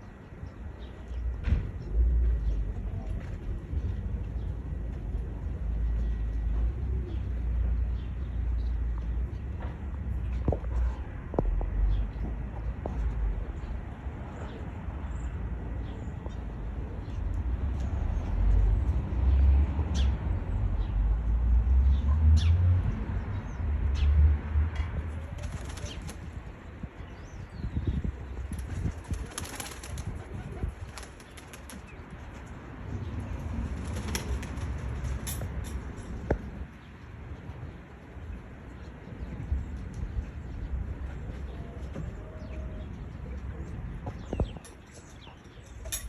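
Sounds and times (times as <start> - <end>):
wind buffeting microphone: 24.8 - 42.2, 42.8 - 45.7.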